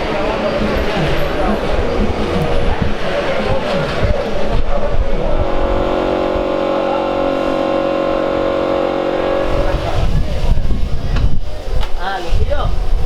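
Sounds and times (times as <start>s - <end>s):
race car engine running: 0.0s - 6.7s.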